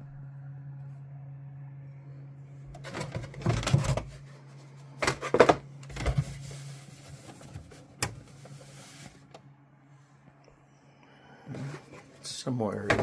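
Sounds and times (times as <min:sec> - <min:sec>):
low machine hum: 0:00.0 - 0:13.0
rustling and clatter of objects: 0:02.8 - 0:09.3.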